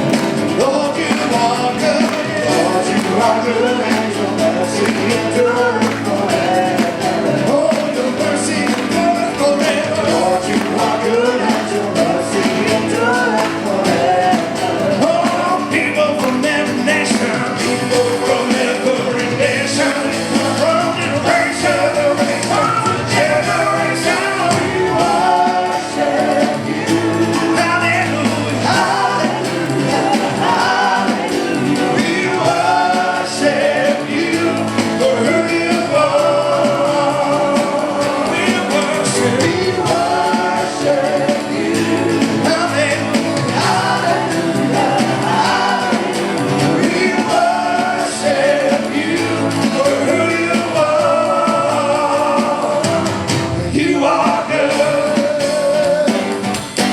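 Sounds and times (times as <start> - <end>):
voices singing: 0.0 - 56.9
worship band playing: 0.0 - 56.9.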